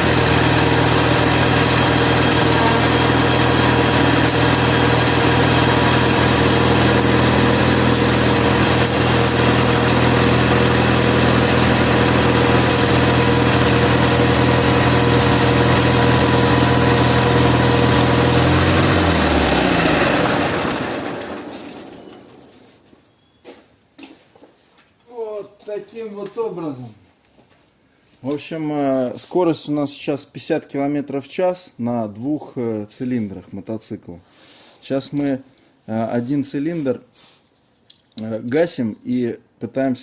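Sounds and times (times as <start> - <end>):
motorcycle engine running steadily: 0.0 - 18.6.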